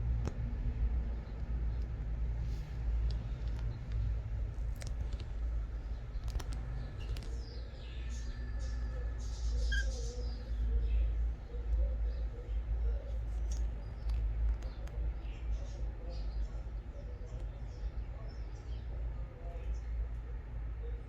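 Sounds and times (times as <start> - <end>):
steady low hum: 0.0 - 21.0
budgerigars chattering: 9.2 - 10.7.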